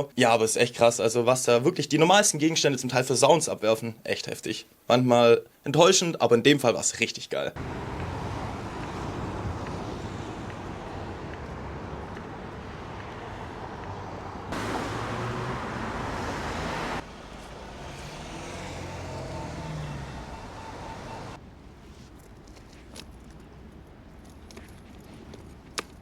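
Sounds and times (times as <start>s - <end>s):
traffic rumble and hiss: 7.6s - 26.0s.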